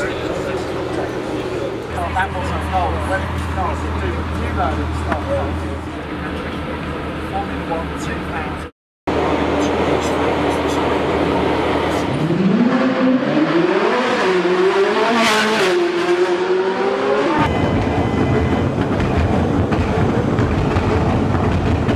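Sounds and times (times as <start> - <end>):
car engine accelerating: 9.1 - 21.9.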